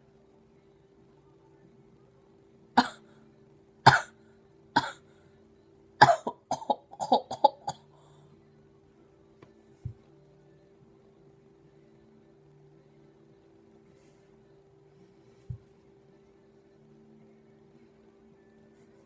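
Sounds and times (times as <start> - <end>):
person coughing: 2.8 - 3.1, 3.9 - 4.2, 4.8 - 5.0, 6.0 - 7.9.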